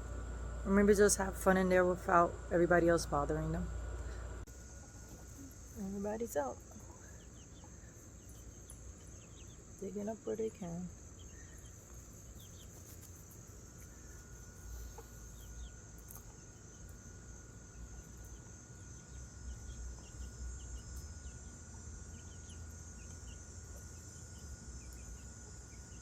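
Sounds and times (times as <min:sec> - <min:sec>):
faint steady whine: 0:00.0 - 0:26.0
insects droning: 0:00.0 - 0:26.0
chickens clucking and peeping: 0:04.8 - 0:10.4, 0:11.0 - 0:24.2.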